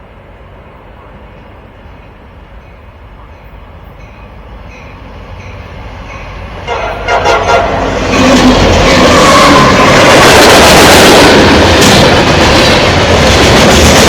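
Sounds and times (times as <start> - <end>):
diesel locomotive engine rumble: 0.0 - 14.0
locomotive horn: 6.6 - 11.2.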